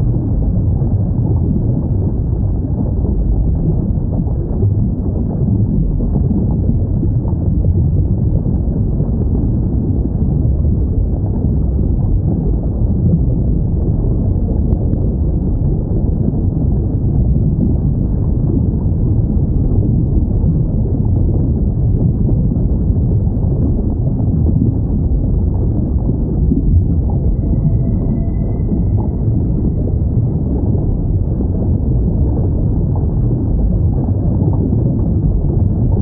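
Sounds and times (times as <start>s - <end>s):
low underwater ocean rumble: 0.0s - 36.0s.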